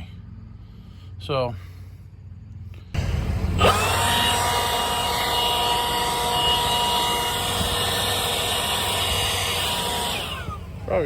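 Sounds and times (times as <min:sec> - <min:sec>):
leaf blower running: 0:03.0 - 0:11.0.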